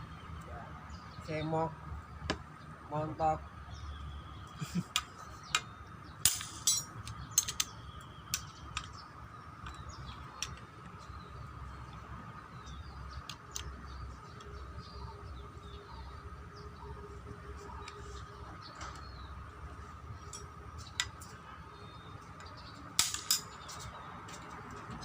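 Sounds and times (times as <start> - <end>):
birds chirping: 0.0 - 25.0
metal tools clinking: 6.2 - 7.7, 23.0 - 23.9.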